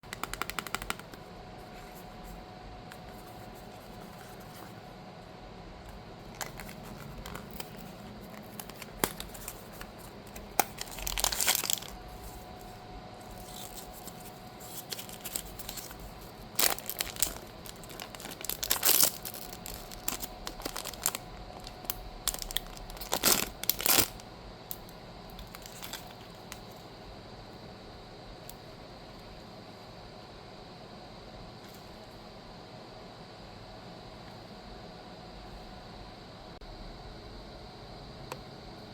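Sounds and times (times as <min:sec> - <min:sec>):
packaging tearing and crinkling: 0:06.2 - 0:24.2, 0:25.4 - 0:26.4.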